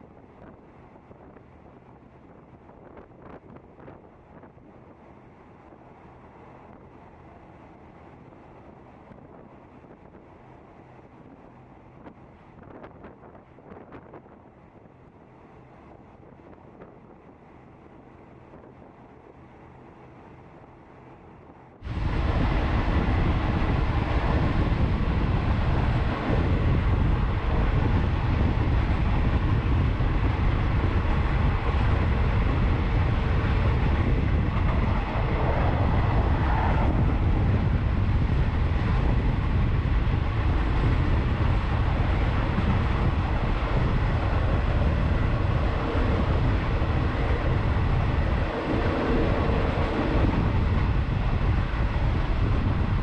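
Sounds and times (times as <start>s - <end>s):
wind on microphone: 0.0s - 17.4s, 21.8s - 53.0s
train running noise from on board: 0.0s - 53.0s.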